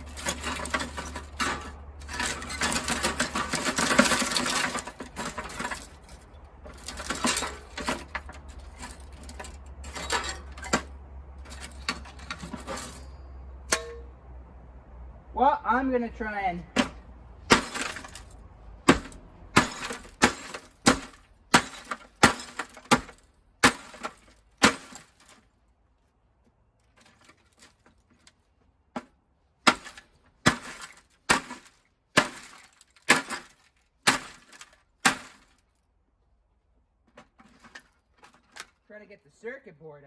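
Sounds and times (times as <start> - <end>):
sharp blows breaking a monitor: 0.0 - 5.9, 16.7 - 25.4, 29.6 - 35.6
glass and plastic cracking: 0.0 - 13.0, 16.8 - 25.4, 29.7 - 35.7.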